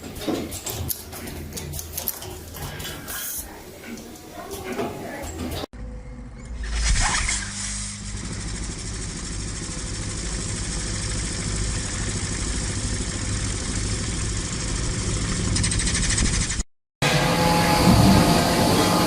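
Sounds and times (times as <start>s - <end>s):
machine humming: 7.7s - 15.9s, 17.0s - 19.0s.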